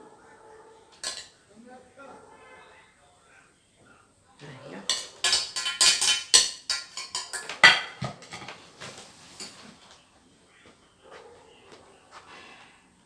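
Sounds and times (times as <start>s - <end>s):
utensils clinking on cookware: 0.9s - 1.4s, 4.4s - 9.9s.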